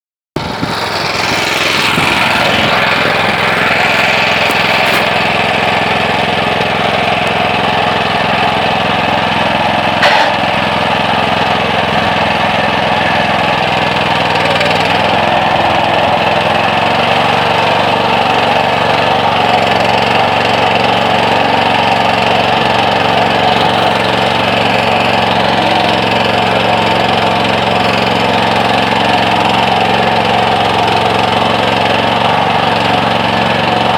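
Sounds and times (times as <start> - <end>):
tractor engine running: 0.4 - 33.9.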